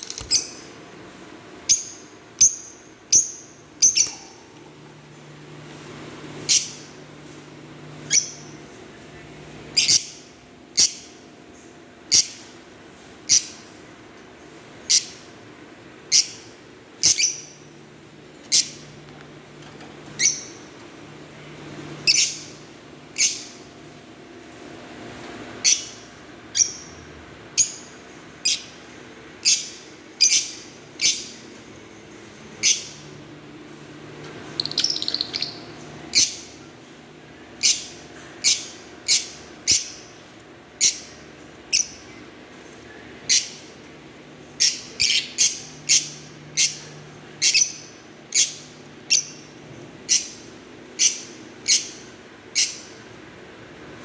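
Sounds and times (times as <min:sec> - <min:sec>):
lovebirds chirping: 0:01.7 - 0:04.4, 0:34.5 - 0:36.6, 0:44.6 - 0:50.4
rapid bird chattering: 0:34.6 - 0:36.6, 0:44.6 - 0:49.5.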